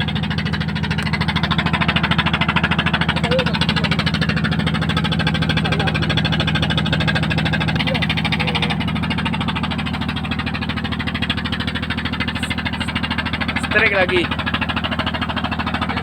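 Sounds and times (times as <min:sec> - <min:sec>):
boat engine thudding: 0:00.0 - 0:16.0.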